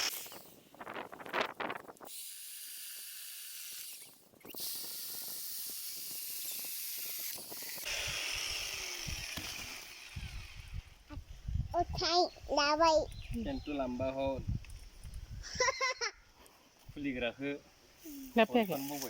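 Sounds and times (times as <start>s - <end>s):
electric chainsaw whining: 0.0s - 0.6s, 2.0s - 11.1s.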